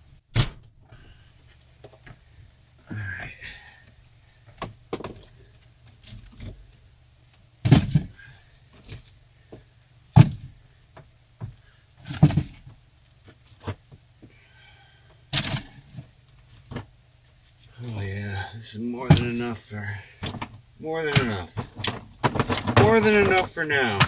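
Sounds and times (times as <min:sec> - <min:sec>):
wood bricks knocking and thudding: 0:11.4 - 0:12.7, 0:20.2 - 0:24.0.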